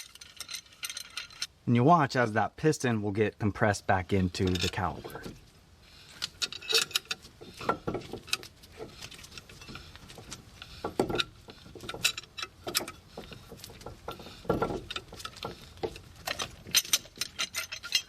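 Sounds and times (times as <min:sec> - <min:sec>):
metal clamp clicking and clinking: 0:00.0 - 0:01.5, 0:06.1 - 0:18.0.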